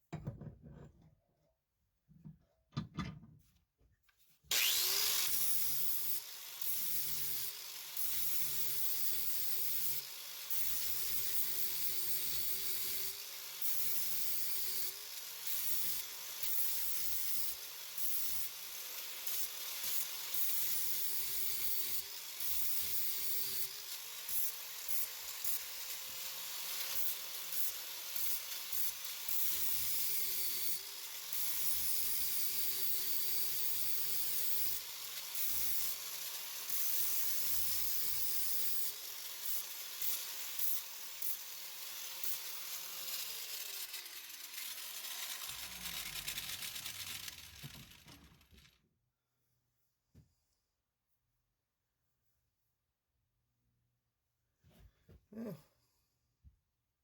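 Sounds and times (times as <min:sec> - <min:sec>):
power grinder grinding metal: 0:04.5 - 0:48.8.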